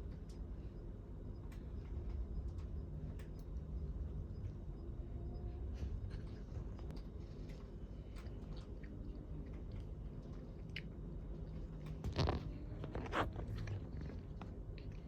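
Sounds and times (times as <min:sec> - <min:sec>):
cat chewing food: 0:06.1 - 0:15.0.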